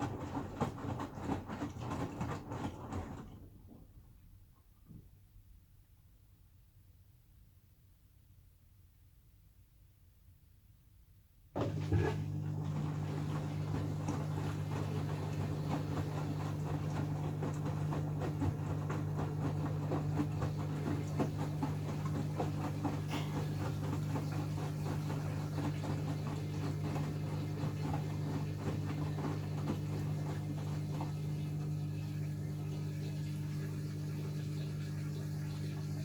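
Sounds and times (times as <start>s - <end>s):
washing machine motor hum: 0.0s - 4.2s, 11.6s - 36.0s
wet laundry tumbling in drum: 0.0s - 4.2s, 11.6s - 36.0s.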